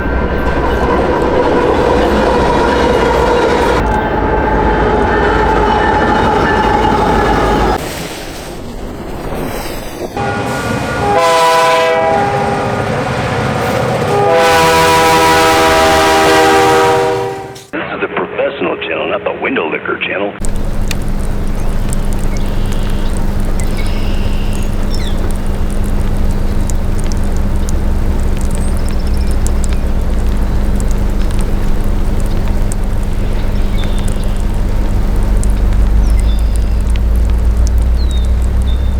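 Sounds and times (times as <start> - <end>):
heavy rain pattering: 0.0 - 9.3, 20.4 - 38.9
passing train rumble: 0.0 - 19.8, 20.4 - 38.9
locomotive air horn blasts: 2.1 - 7.8, 10.2 - 17.8.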